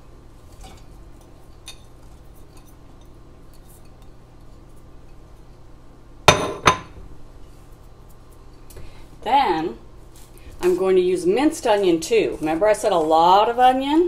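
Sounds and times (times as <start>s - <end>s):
dish clinking against cooking pot: 6.3s - 6.9s.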